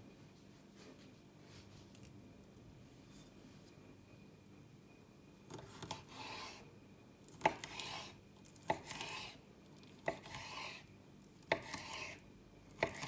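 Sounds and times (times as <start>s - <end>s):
knife cutting on cutting board: 5.5s - 6.6s, 7.4s - 9.4s, 10.0s - 10.9s, 11.5s - 12.2s, 12.8s - 13.0s.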